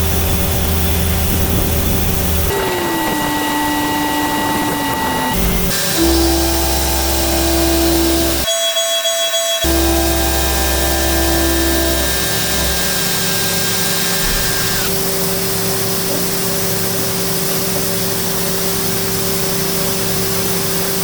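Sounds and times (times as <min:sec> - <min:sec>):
high whine: 0:00.0 - 0:08.5, 0:09.6 - 0:15.4
lathe machine hum: 0:00.0 - 0:21.0.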